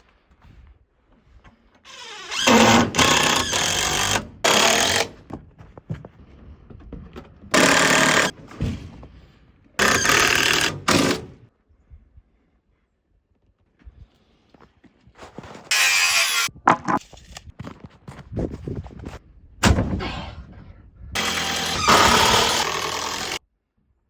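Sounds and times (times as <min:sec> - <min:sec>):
handheld power tool whining: 0:01.9 - 0:05.2, 0:07.5 - 0:08.4, 0:09.8 - 0:11.4, 0:15.7 - 0:16.5, 0:21.2 - 0:23.4.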